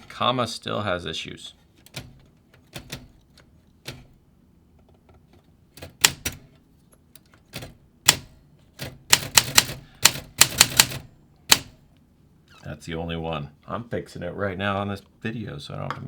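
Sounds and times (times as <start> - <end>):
typewriter keys clicking: 1.8 - 3.2, 5.8 - 6.4, 7.5 - 11.7.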